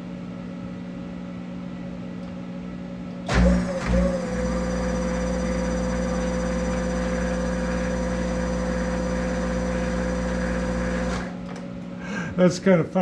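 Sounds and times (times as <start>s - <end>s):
lathe running with whine: 3.3s - 11.4s.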